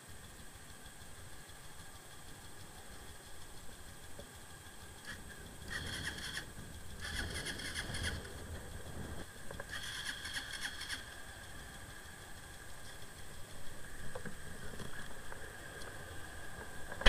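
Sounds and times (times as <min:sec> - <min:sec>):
motorcycle engine cranking: 0:05.0 - 0:09.0, 0:09.6 - 0:11.5.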